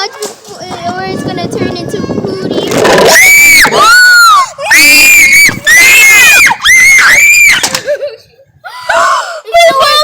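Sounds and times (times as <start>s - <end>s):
child screaming: 3.0s - 7.6s, 8.8s - 10.0s.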